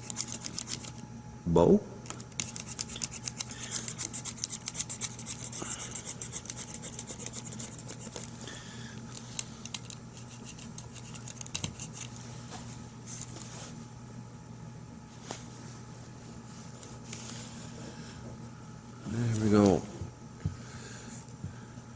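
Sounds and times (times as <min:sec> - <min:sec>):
tape being rubbed with scraping: 0:00.0 - 0:01.0, 0:02.4 - 0:08.2.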